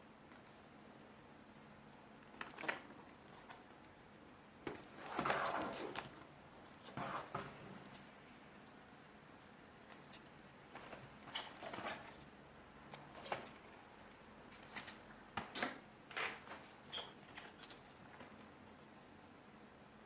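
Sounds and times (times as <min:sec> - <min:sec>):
packaging rustling and scraping: 0:04.7 - 0:06.2, 0:06.8 - 0:07.8, 0:10.7 - 0:12.3.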